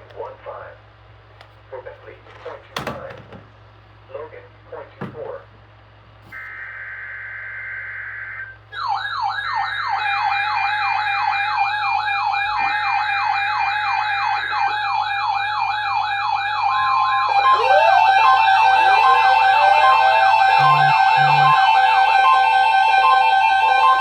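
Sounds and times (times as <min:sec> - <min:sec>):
electronic wailing siren: 0:06.4 - 0:24.0.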